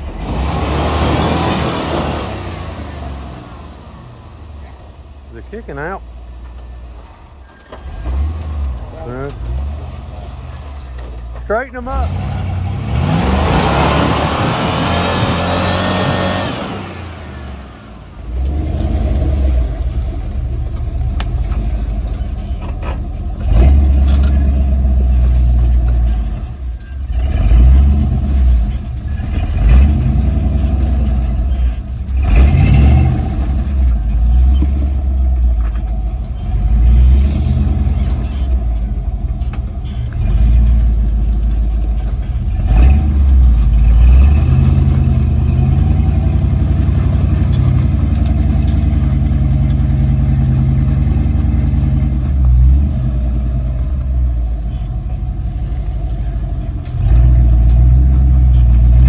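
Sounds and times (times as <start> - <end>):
truck engine revving at low speed: 0.0 - 59.0
truck knocking over rock: 18.3 - 59.0.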